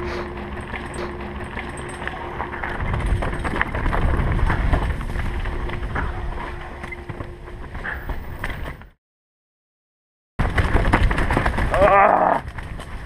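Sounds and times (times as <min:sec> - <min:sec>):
bike rattling on rough trail: 0:00.0 - 0:08.9, 0:10.4 - 0:13.0
wind buffeting microphone: 0:01.2 - 0:08.4.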